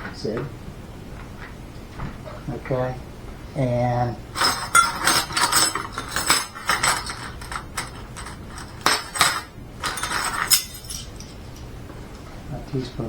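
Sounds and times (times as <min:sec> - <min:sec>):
utensils and dishes clinking: 0:04.3 - 0:11.7.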